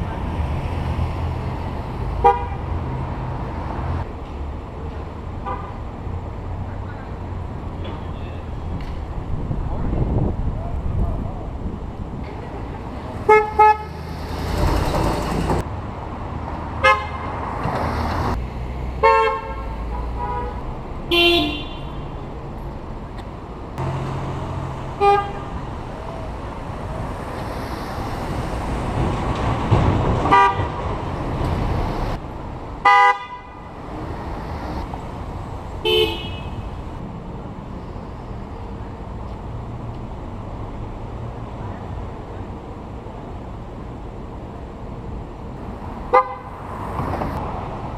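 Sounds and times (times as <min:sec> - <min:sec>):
road traffic noise: 0:00.0 - 0:47.9
car horns honking: 0:02.2 - 0:02.8, 0:13.2 - 0:14.1, 0:16.8 - 0:17.4, 0:19.0 - 0:22.2, 0:25.0 - 0:25.6, 0:30.3 - 0:30.9, 0:32.8 - 0:33.7, 0:35.8 - 0:36.8, 0:46.1 - 0:46.8.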